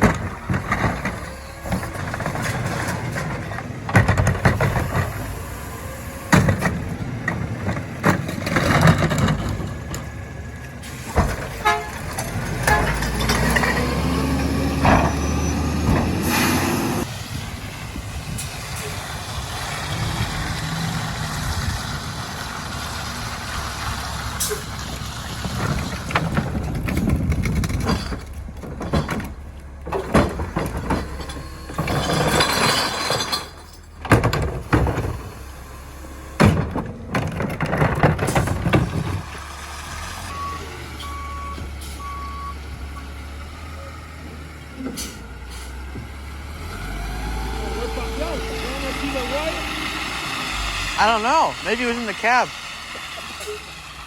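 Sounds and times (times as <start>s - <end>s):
loud clanks and bangs: 0.0s - 5.4s, 6.2s - 17.1s, 24.2s - 35.4s, 36.2s - 39.5s
garbage truck engine and hydraulics: 0.0s - 54.0s.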